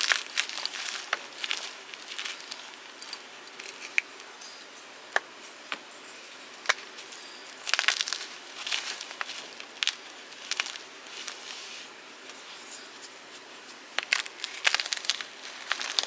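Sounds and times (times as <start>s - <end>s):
chalk blocks crunching: 0.0s - 4.1s, 7.5s - 16.0s.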